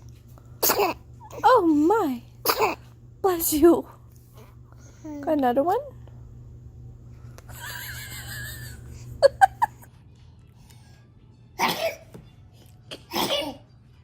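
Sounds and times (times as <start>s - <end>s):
baby sneezing: 0.6s - 1.0s, 2.4s - 2.9s, 11.6s - 12.1s, 12.9s - 13.6s.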